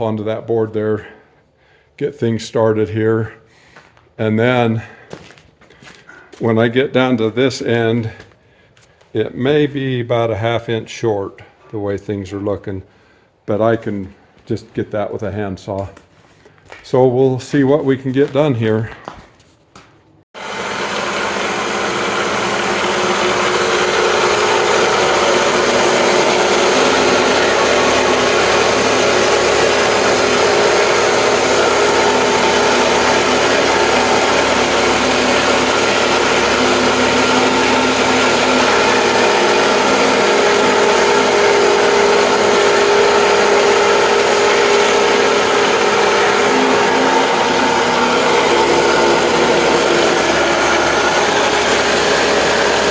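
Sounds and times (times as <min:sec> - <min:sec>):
engine-driven saw ripping log: 0:20.4 - 0:52.9.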